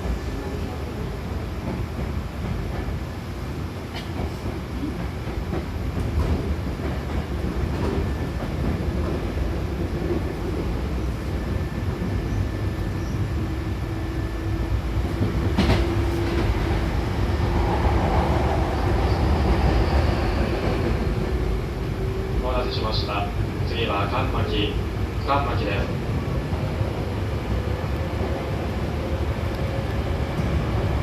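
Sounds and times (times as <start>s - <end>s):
train wheels rumbling: 0.0s - 31.0s.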